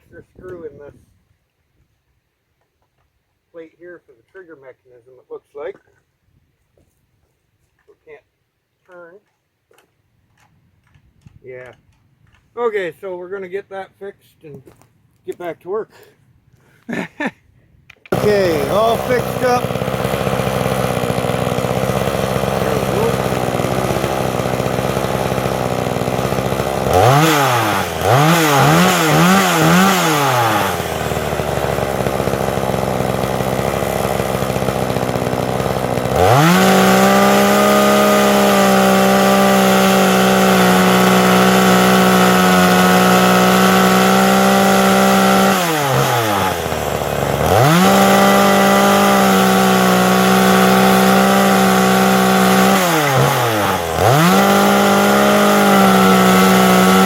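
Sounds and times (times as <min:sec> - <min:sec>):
chainsaw revving and idling: 0:18.1 - 0:57.0.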